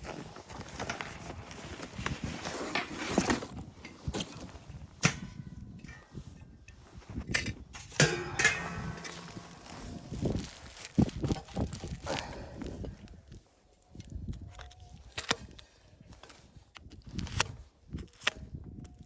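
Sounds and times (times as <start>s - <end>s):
rustling: 0.0s - 4.7s, 8.0s - 17.7s.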